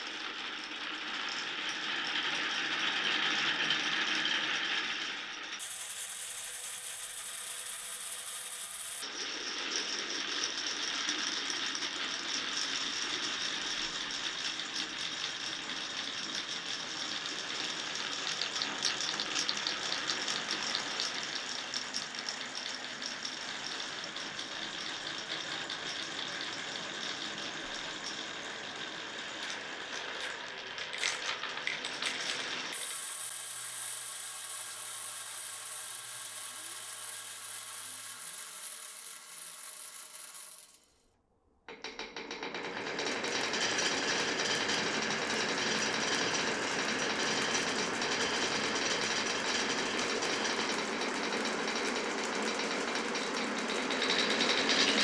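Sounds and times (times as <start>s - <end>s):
marbles rolling on wooden tracks: 0.4s - 9.1s, 17.0s - 40.9s
hissy rolling sound: 5.6s - 9.0s, 30.2s - 40.9s.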